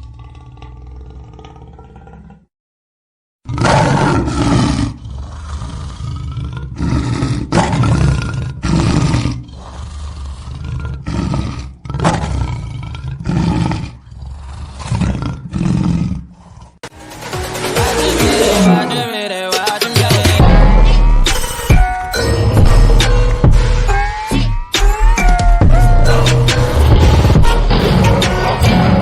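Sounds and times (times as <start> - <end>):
lion roaring: 0.0 - 2.5, 3.5 - 16.8, 18.2 - 19.0, 25.1 - 29.0.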